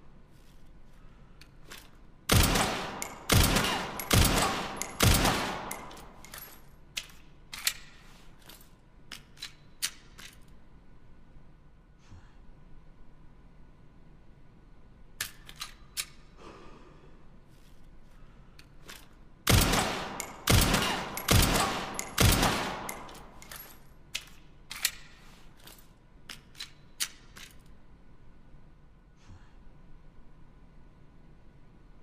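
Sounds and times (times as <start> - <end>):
pistol shots: 2.3 - 6.2, 19.5 - 23.4
sharp metallic clicks: 2.3 - 7.9, 19.5 - 25.1.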